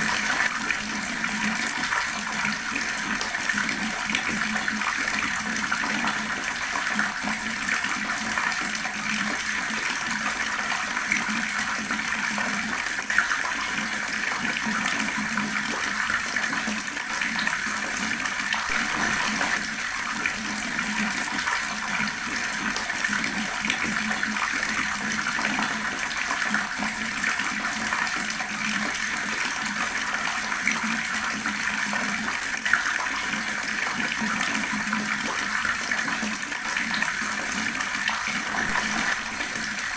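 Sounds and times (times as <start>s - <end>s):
water tap running: 11.0s - 29.4s, 34.2s - 39.9s.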